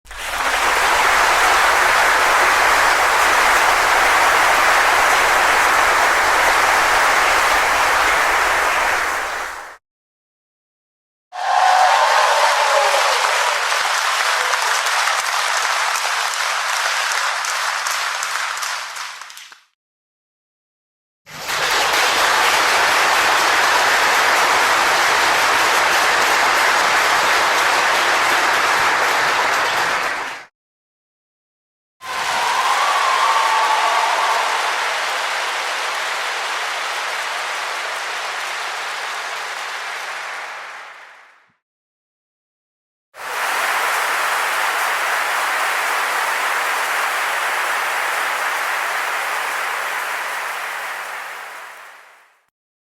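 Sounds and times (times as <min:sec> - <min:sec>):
crowd clapping: 0:00.0 - 0:09.8, 0:11.4 - 0:19.8, 0:21.3 - 0:30.5, 0:32.0 - 0:41.5, 0:43.2 - 0:52.5
audience applause: 0:00.1 - 0:09.8, 0:11.4 - 0:19.7, 0:21.3 - 0:30.5, 0:32.0 - 0:41.4, 0:43.2 - 0:52.4.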